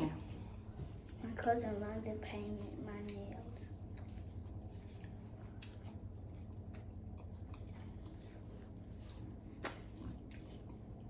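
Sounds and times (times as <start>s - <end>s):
low steady hum: 0.0s - 11.0s
chewing and mouth sounds: 2.9s - 11.0s.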